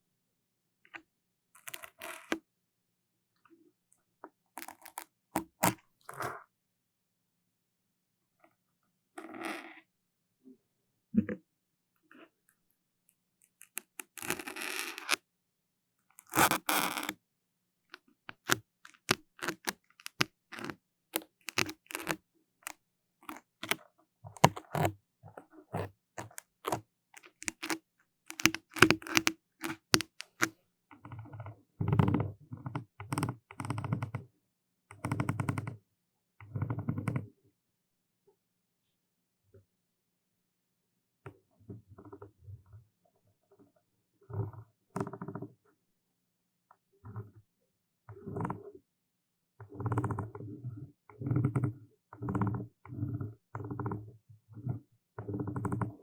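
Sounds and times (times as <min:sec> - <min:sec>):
scratchy rubbing on microphone: 0:13.6 - 0:15.2, 0:16.3 - 0:17.2
crackles and taps: 0:17.9 - 0:33.9.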